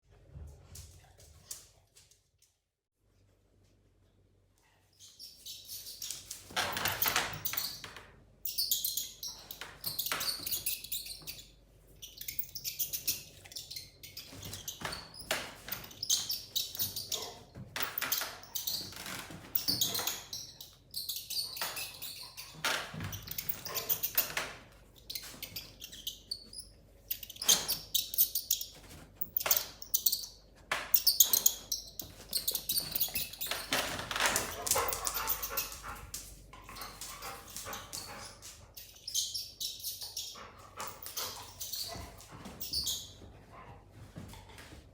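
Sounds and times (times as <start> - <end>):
mouse squeaking: 8.4 - 17.4, 19.6 - 24.3, 25.0 - 33.9, 38.7 - 43.2.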